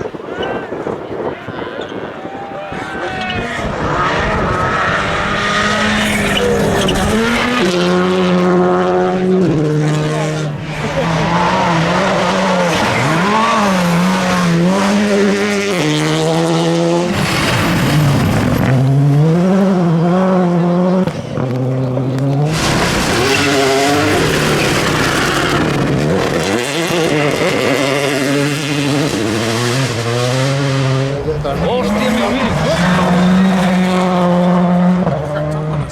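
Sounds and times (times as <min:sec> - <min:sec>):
rally car engines revving: 0:00.8 - 0:35.9
gravel noise: 0:17.0 - 0:19.3.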